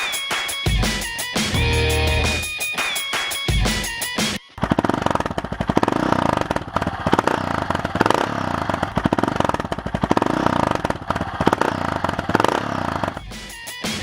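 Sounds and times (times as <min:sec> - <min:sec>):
motorcycle engine revving: 0:04.6 - 0:13.4.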